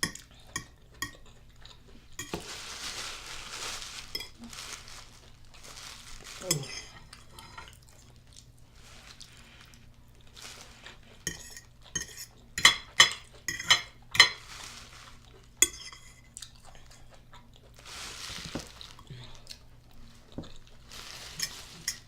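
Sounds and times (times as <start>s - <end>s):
cutlery scraping a dish: 11.2s - 14.4s, 15.6s - 16.3s, 21.3s - 22.0s
cutlery clinking on a dish: 11.3s - 14.4s, 21.4s - 22.0s.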